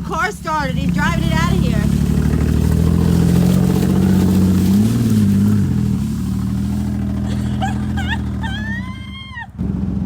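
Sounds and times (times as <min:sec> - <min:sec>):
car engine running and revving: 0:00.0 - 0:08.9, 0:09.5 - 0:10.0.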